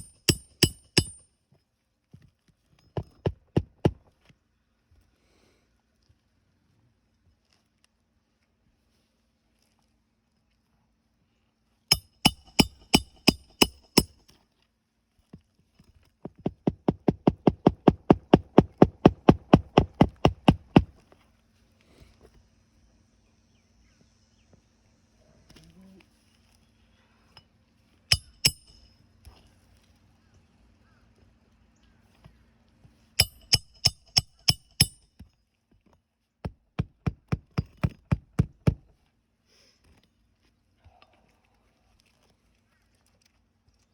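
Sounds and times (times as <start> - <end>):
hammer striking roofing nails: 0.0 - 1.2, 3.0 - 4.1, 11.9 - 14.2, 16.3 - 21.0, 33.2 - 35.0, 36.4 - 38.9.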